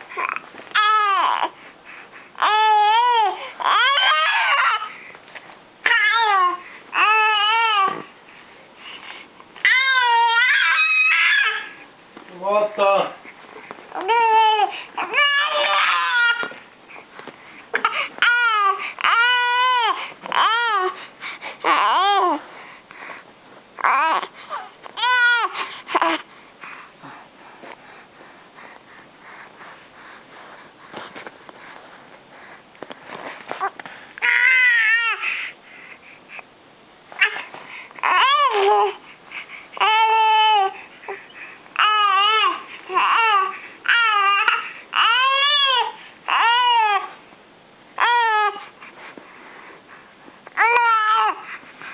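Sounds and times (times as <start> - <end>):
baby crying: 0.2 - 1.6, 2.4 - 4.9, 5.8 - 8.0, 9.6 - 11.8, 14.0 - 16.6, 17.8 - 21.0, 21.6 - 22.4, 23.8 - 26.2, 34.2 - 35.3, 37.2 - 39.0, 39.8 - 40.8, 41.8 - 47.1, 48.0 - 48.7, 50.6 - 51.4.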